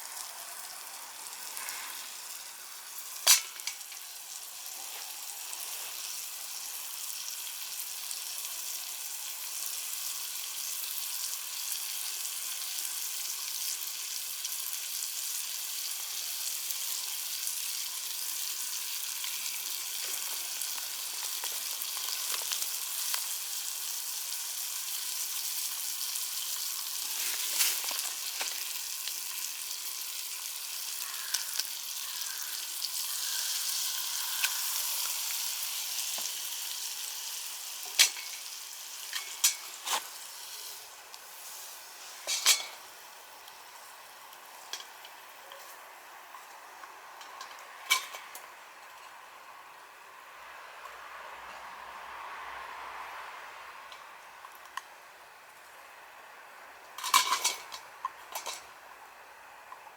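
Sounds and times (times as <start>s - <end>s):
meat sizzling over fire: 0.0s - 59.9s
fire crackles and pops: 15.1s - 31.9s.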